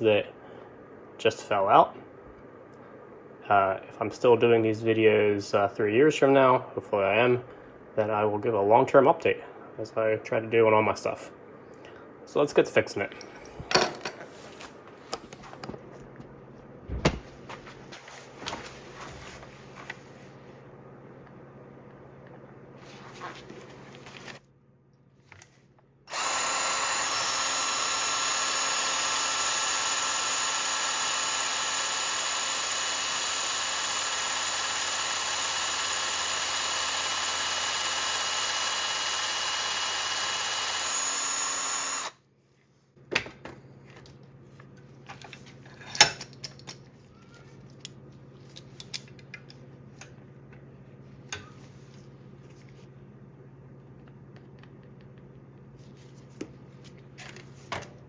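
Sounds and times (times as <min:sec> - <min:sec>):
electric drill whining: 0:26.1 - 0:42.2.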